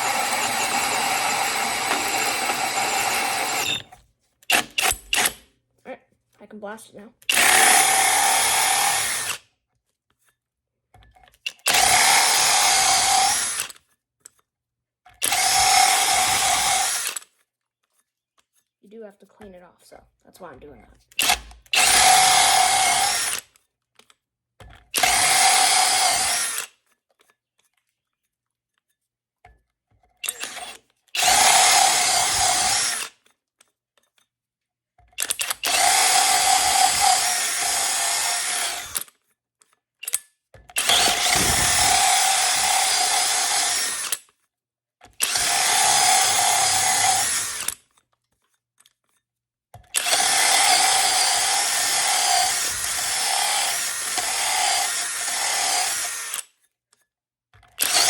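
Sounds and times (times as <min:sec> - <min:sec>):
drill hole saw cutting wood: 0:00.0 - 0:03.9, 0:04.5 - 0:05.4, 0:07.3 - 0:09.4, 0:11.5 - 0:13.8, 0:15.2 - 0:17.3, 0:21.2 - 0:23.5, 0:25.0 - 0:26.8, 0:30.2 - 0:33.2, 0:35.2 - 0:39.1, 0:40.8 - 0:44.2, 0:45.2 - 0:47.8, 0:50.0 - 0:56.5, 0:57.8 - 0:58.0.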